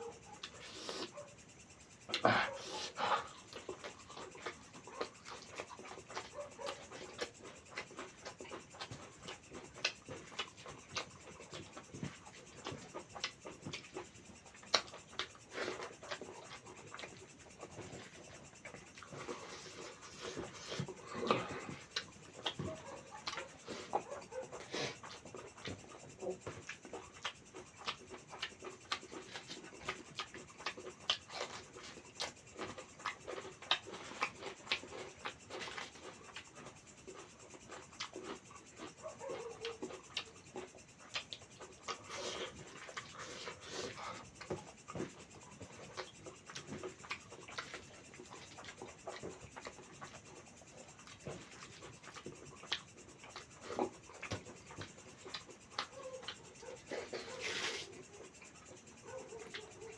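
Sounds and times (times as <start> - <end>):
person chewing food: 0.0 - 1.3, 2.0 - 59.9.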